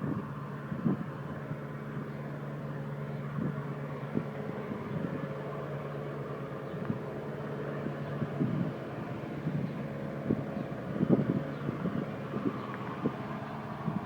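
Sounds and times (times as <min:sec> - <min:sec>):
heavy machine engine humming: 0:00.0 - 0:14.0.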